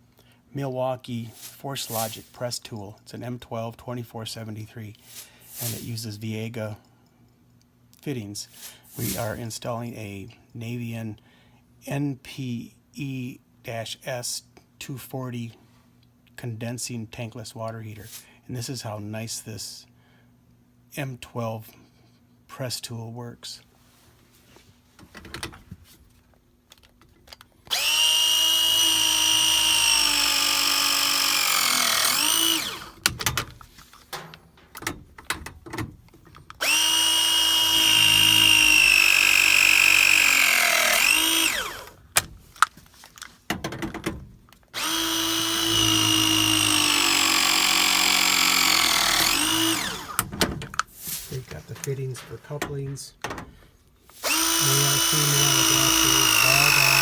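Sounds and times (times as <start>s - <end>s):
press tool motor whine: 27.7s - 33.0s, 36.6s - 42.0s, 44.8s - 50.2s, 54.1s - 57.0s.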